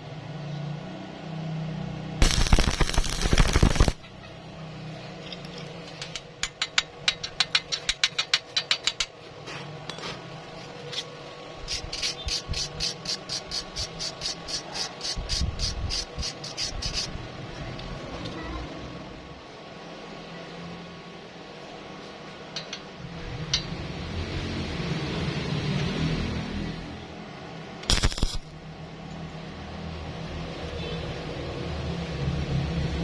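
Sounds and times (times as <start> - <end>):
brush strokes cleaning weld: 2.2 - 4.0, 9.4 - 17.3, 27.9 - 28.5
loud burst of noise: 2.2 - 4.1, 27.8 - 28.5.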